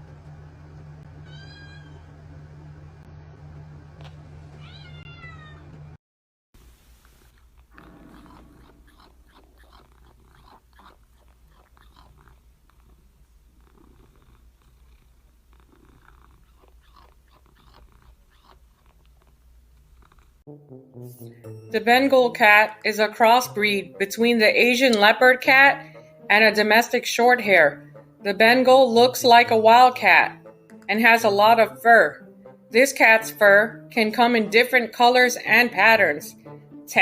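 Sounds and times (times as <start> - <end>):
steady low hum: 0.0 - 4.6
cat meowing: 1.2 - 2.0, 4.6 - 5.7.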